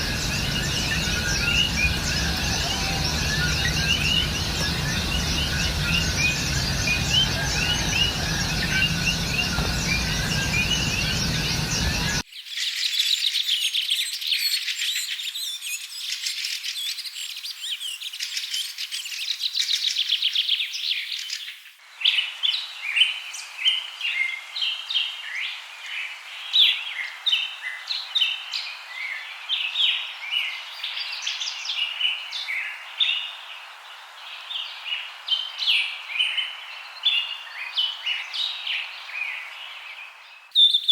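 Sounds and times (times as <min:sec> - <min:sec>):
birds chirping: 0:00.0 - 0:12.2
low background noise: 0:00.0 - 0:12.2.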